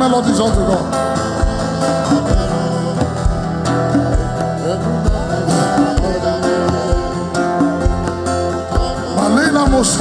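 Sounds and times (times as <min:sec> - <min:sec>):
low drum beat: 0:00.0 - 0:10.0
person singing: 0:00.0 - 0:10.0.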